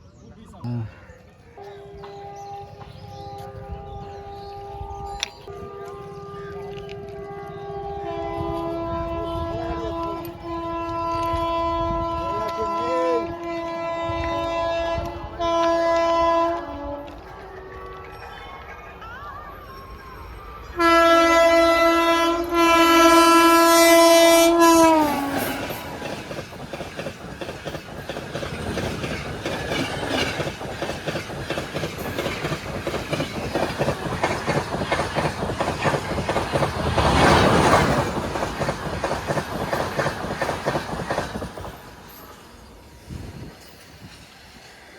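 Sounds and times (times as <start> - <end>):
train horn: 1.6 - 18.2, 20.8 - 26.4
train wheels clattering over rails: 25.0 - 44.9.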